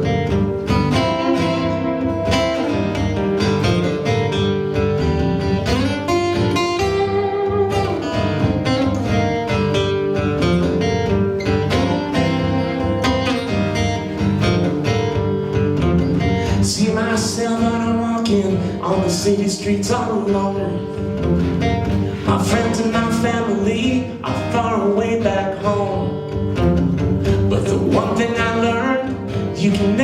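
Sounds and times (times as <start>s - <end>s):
acoustic guitar strumming: 0.0s - 30.0s
sliding melody line: 0.3s - 5.6s, 11.4s - 14.7s.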